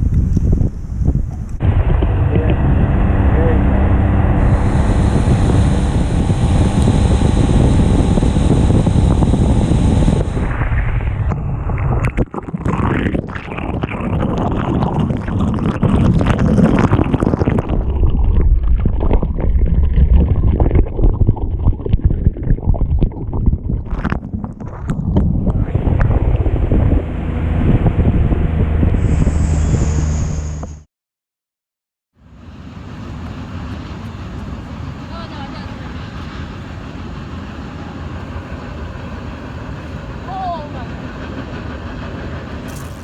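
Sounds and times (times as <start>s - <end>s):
wind buffeting microphone: 0.0s - 30.1s
outboard motor hum: 1.4s - 29.2s.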